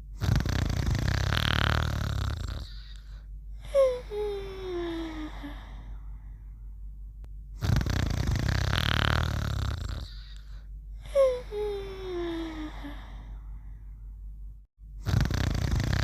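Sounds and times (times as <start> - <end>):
loud rasping snore: 0.2 - 3.0, 7.6 - 10.5, 15.0 - 16.0.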